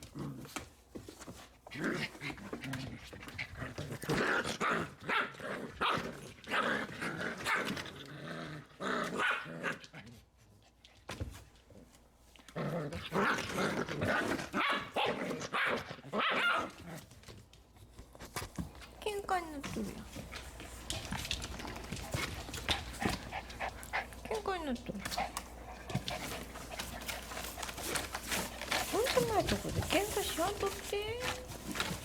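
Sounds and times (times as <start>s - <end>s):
puppies barking and growling: 1.8s - 10.0s, 12.4s - 17.4s, 19.6s - 32.0s.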